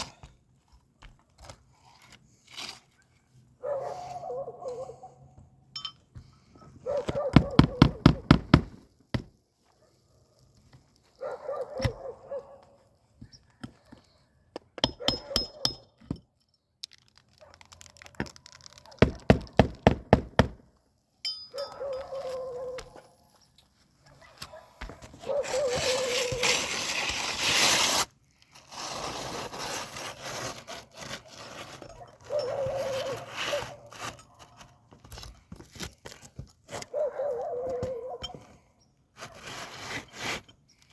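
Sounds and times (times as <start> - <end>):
tools scraping and prying shingles: 0.0 - 4.2, 13.2 - 20.6, 24.4 - 40.9.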